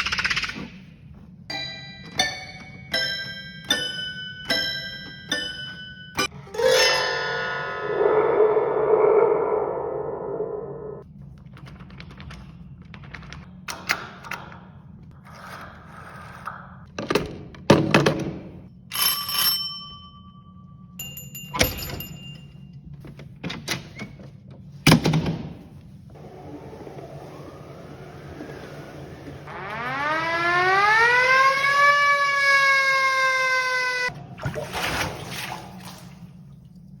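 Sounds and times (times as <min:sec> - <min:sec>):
siren-like wail: 0:07.4 - 0:11.0, 0:26.2 - 0:34.1.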